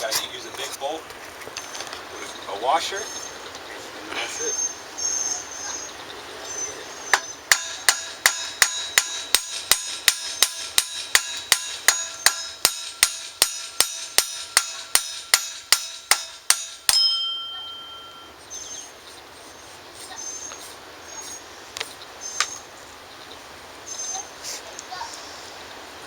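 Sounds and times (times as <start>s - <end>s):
hammer beating on metal: 7.2s - 18.2s.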